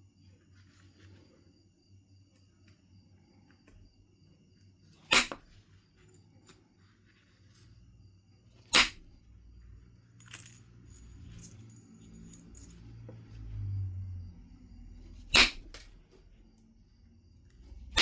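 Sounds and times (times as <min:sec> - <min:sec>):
sharp strikes on stone: 0:05.1 - 0:05.6, 0:08.7 - 0:09.1, 0:15.3 - 0:15.8.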